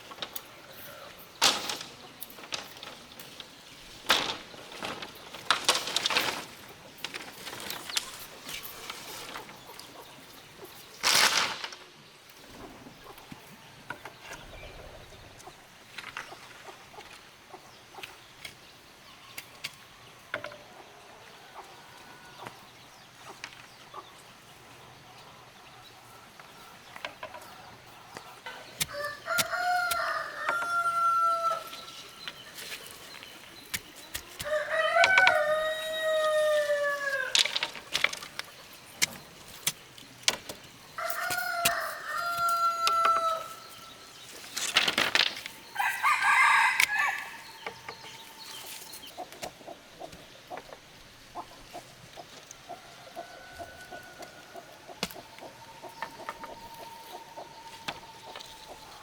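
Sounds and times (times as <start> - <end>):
rooster crowing: 28.9 - 31.8, 34.4 - 37.4, 41.0 - 43.6, 45.7 - 47.6.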